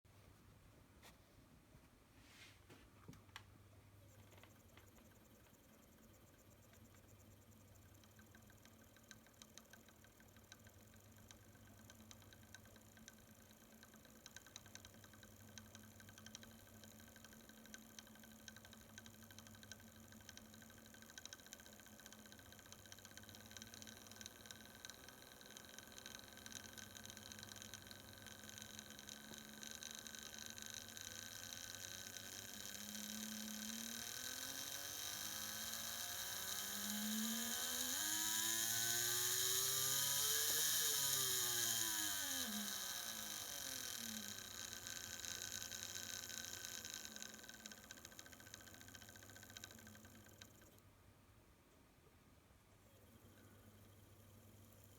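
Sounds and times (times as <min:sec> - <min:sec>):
model train motor humming: 0:07.7 - 0:50.8
rising motor whine: 0:32.1 - 0:45.4.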